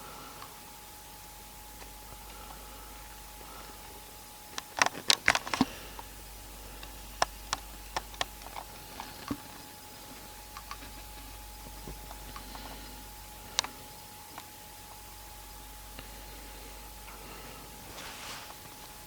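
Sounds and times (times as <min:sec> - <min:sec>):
faint high-pitched hum: 0:00.0 - 0:19.0.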